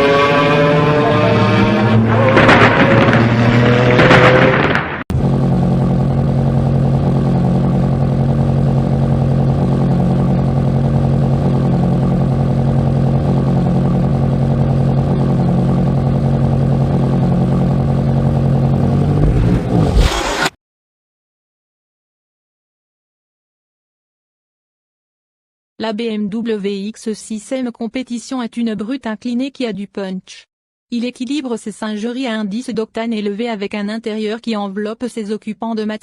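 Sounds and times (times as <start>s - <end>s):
car engine revving: 0.0s - 20.5s.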